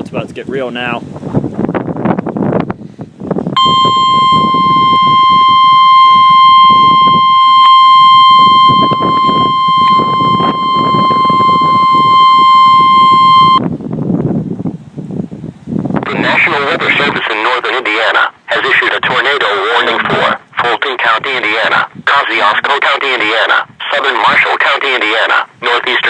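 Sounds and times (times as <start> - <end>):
steady alert tone: 3.6 - 13.6.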